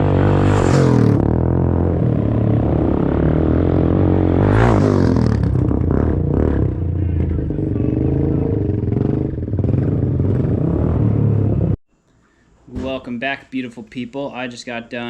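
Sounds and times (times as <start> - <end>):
engine running: 0.0 - 11.8.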